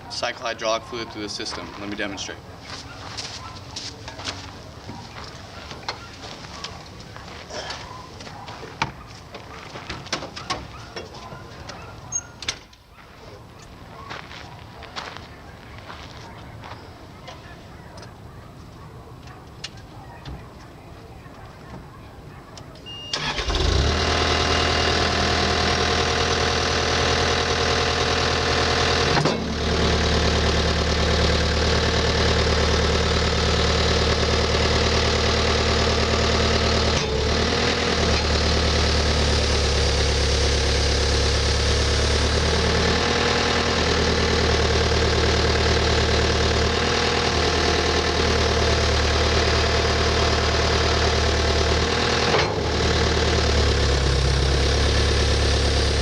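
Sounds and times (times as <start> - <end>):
skid steer engine running: 23.1 - 56.0.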